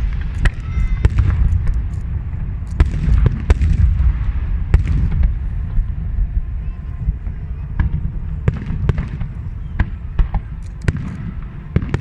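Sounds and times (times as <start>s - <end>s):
firework bangs: 0.0s - 12.0s
low rumble of bursts: 0.0s - 12.0s.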